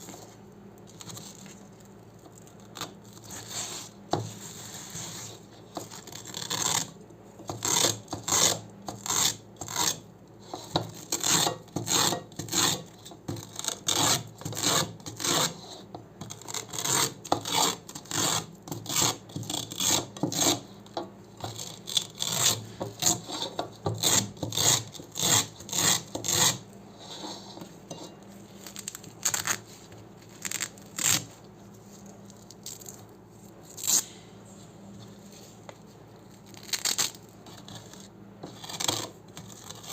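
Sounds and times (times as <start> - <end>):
velcro fastener rasping: 5.1 - 7.0, 28.6 - 31.4, 33.7 - 34.1, 36.4 - 39.9.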